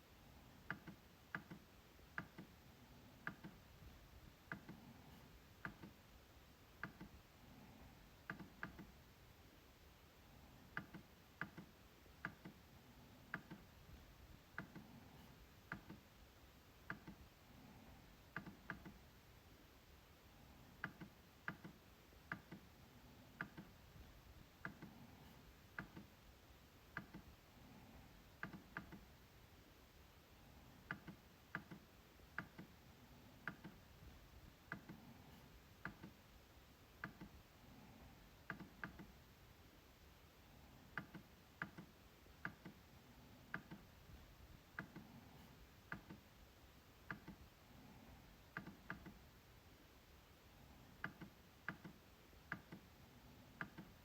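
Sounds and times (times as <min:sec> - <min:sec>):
trackpad clicks: 0:00.7 - 0:02.6, 0:03.2 - 0:03.6, 0:04.5 - 0:06.0, 0:06.8 - 0:07.2, 0:08.2 - 0:09.0, 0:10.7 - 0:12.6, 0:13.3 - 0:13.7, 0:18.3 - 0:19.0, 0:20.8 - 0:22.7, 0:23.3 - 0:23.8, 0:24.6 - 0:26.1, 0:30.8 - 0:32.8, 0:33.4 - 0:33.9, 0:35.8 - 0:36.2, 0:37.0 - 0:37.4, 0:38.5 - 0:39.2, 0:40.9 - 0:42.8, 0:43.5 - 0:43.9, 0:47.0 - 0:47.5, 0:48.5 - 0:49.2, 0:51.0 - 0:52.9.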